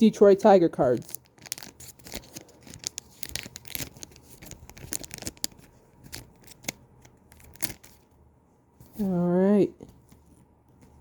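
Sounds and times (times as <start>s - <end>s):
plastic packaging crinkling: 0.8s - 8.1s.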